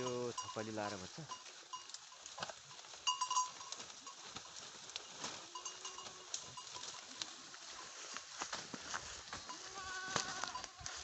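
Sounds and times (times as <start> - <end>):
goat bleating: 5.3 - 7.8, 9.4 - 11.0.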